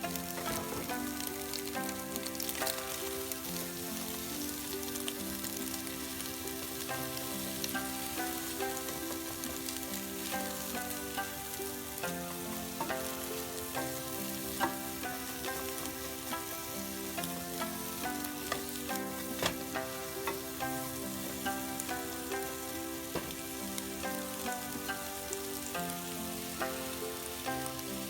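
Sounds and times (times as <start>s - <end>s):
background music: 0.0s - 28.0s
food sizzling in oil: 0.0s - 28.0s
spatula clicking against pan: 18.3s - 20.6s.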